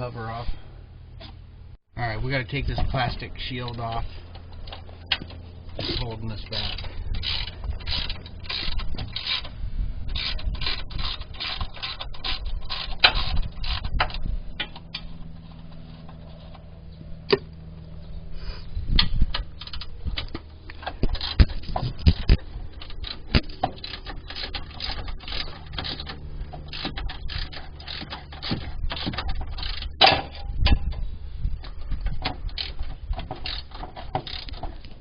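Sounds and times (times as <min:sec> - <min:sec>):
steady low hum: 0:00.0 - 0:35.0
hand tools clicking and knocking: 0:02.7 - 0:09.5, 0:19.0 - 0:31.0, 0:31.6 - 0:35.0.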